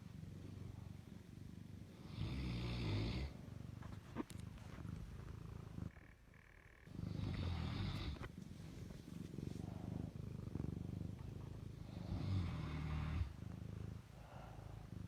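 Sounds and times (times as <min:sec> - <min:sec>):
dog snoring: 0:02.0 - 0:03.4, 0:06.8 - 0:08.3, 0:11.8 - 0:13.4.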